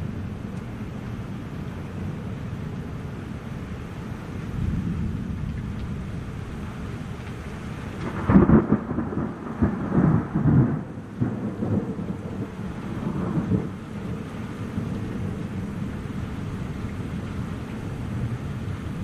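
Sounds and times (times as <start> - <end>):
thunder clap and rumble: 4.6 - 19.0.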